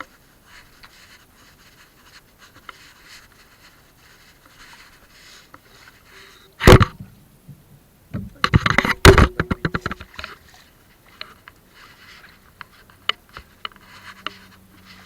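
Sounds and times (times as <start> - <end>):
clatter of knocks and scrapes: 8.2 - 10.6.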